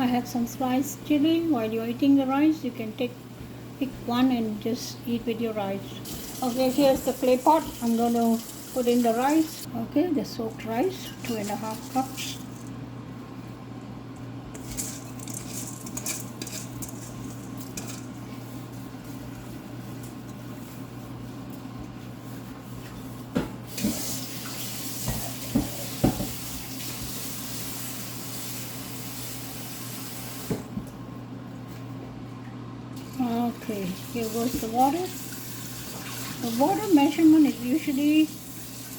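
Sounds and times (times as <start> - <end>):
kitchen tap running: 5.7 - 9.7, 10.4 - 12.8, 23.7 - 30.7, 33.0 - 38.9.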